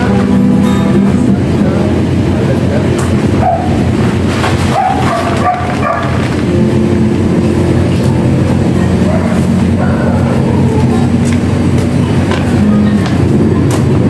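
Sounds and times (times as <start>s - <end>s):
vehicle engine running: 0.0s - 14.0s
dog yelps: 3.4s - 3.8s, 4.7s - 6.2s.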